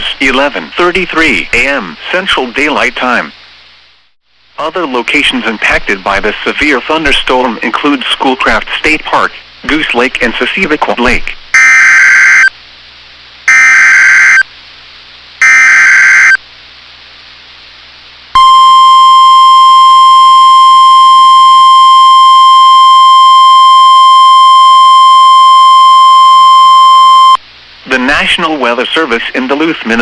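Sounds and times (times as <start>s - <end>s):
steady alarm tone: 11.6s - 12.5s, 13.5s - 14.5s, 15.4s - 16.4s, 18.4s - 27.4s
digital data bursts: 13.5s - 14.4s, 15.4s - 16.4s.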